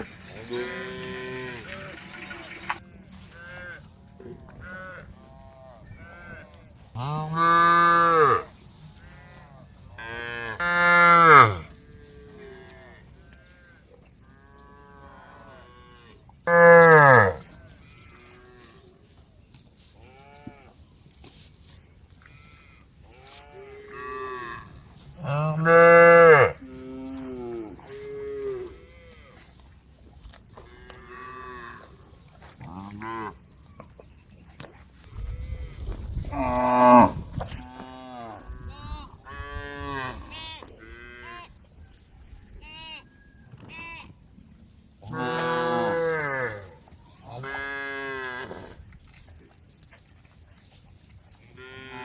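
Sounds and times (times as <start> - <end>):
cattle mooing: 7.0 - 8.5, 23.2 - 29.2, 45.1 - 46.7.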